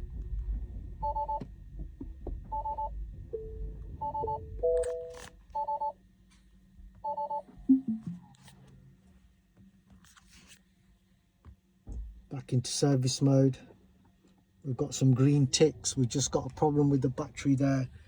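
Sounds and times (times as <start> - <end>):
electronic two-tone reversing beeps: 7.1 - 8.2
low falling tone: 7.7 - 8.3.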